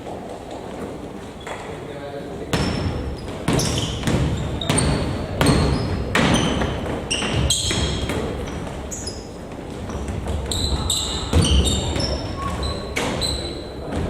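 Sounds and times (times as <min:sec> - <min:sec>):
basketball bouncing thuds: 0:02.5 - 0:08.9, 0:09.5 - 0:13.2
basketball shoes squeaking: 0:02.5 - 0:14.0.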